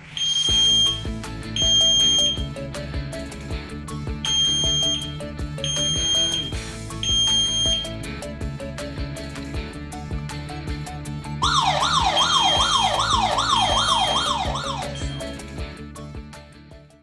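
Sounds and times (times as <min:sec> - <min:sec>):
burglar alarm siren: 0:00.0 - 0:02.5, 0:04.2 - 0:08.0, 0:11.4 - 0:15.5
background music with steady beat: 0:00.0 - 0:17.0.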